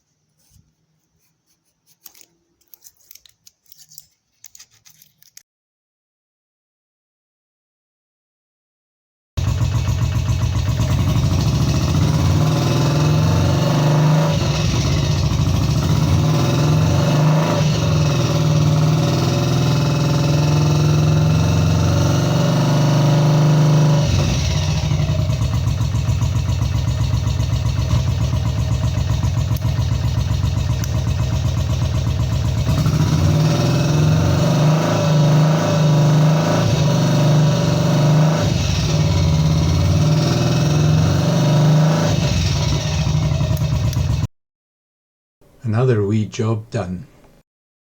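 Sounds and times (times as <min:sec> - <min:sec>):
motorcycle engine revving: 0:09.4 - 0:44.3.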